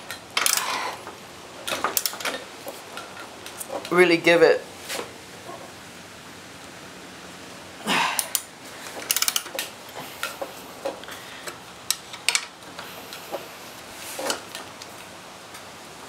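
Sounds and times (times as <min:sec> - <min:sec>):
wrench clicking on metal: 0:09.1 - 0:09.6.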